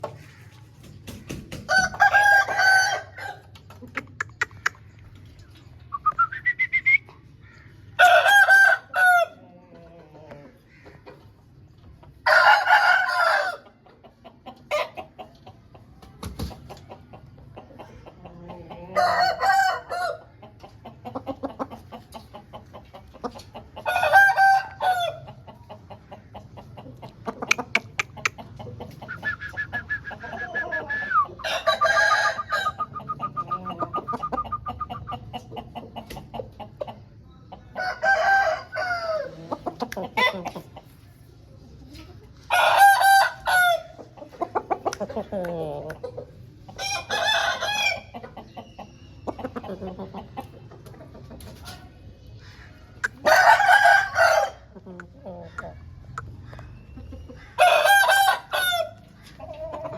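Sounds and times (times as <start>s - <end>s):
roosters crowing: 1.4s - 3.6s, 7.8s - 10.9s, 12.2s - 13.8s, 18.5s - 20.4s, 23.8s - 26.0s, 29.1s - 35.1s, 37.7s - 40.8s, 42.4s - 44.2s, 46.7s - 48.3s, 53.0s - 54.8s, 57.3s - 59.9s.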